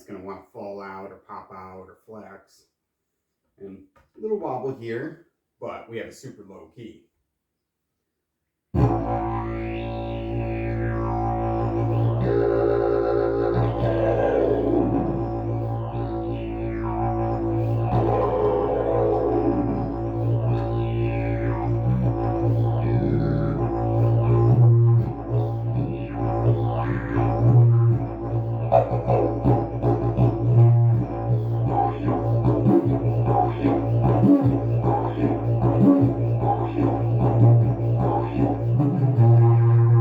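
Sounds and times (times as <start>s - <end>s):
didgeridoo low drone: 8.8s - 40.0s.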